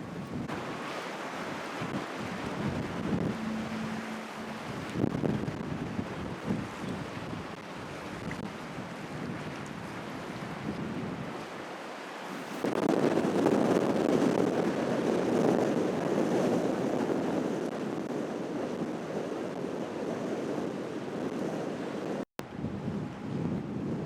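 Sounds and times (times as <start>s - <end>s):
wind buffeting microphone: 0.0s - 11.6s, 12.2s - 24.0s
storm waves surging: 0.0s - 16.9s.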